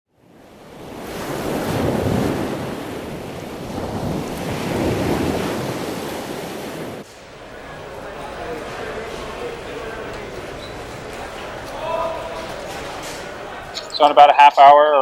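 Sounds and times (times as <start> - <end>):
wind buffeting microphone: 0.1 - 7.1
waterfall roaring: 0.6 - 15.0.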